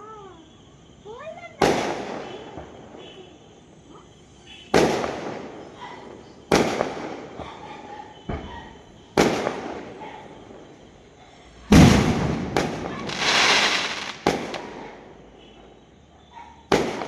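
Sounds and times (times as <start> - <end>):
fireworks bangs: 1.2 - 3.2, 4.6 - 10.0, 11.7 - 15.7, 16.7 - 17.0
hissing firework burst: 11.7 - 14.9.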